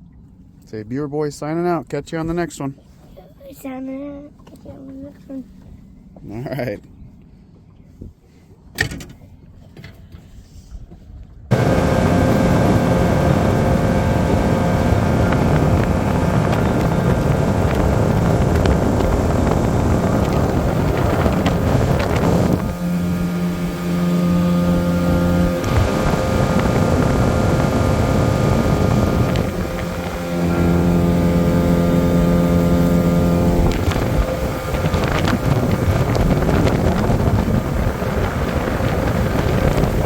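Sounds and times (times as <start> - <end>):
outboard boat motor running: 0.0 - 0.7, 2.2 - 40.0
rush of wind and water: 10.8 - 40.0.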